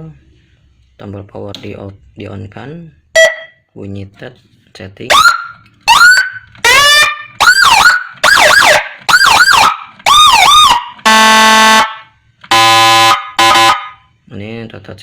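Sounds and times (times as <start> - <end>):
whooping yelping siren bursts: 5.2 - 12.0
buzzy horn blasts: 11.0 - 14.0.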